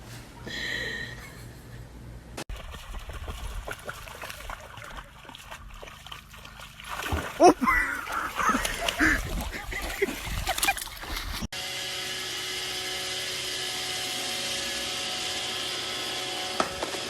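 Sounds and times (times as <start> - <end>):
small electric motor whining: 11.6 - 17.0.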